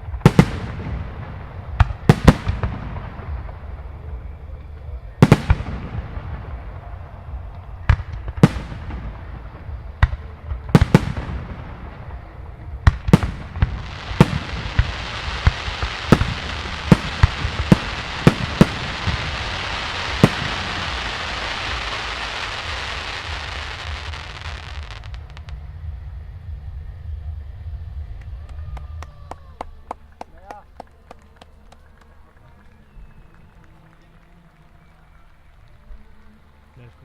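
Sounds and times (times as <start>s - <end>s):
firework bangs: 0.0s - 25.7s
crackling firework hiss: 0.0s - 33.9s.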